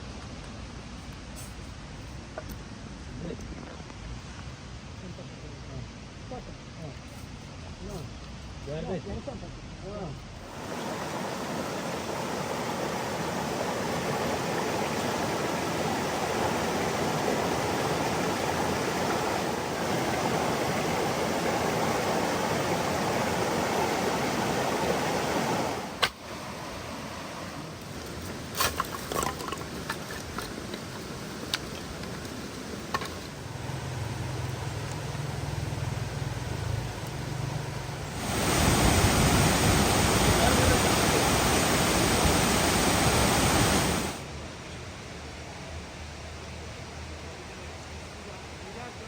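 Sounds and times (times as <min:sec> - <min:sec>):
waterfall rushing: 0:10.4 - 0:27.8, 0:33.4 - 0:44.3.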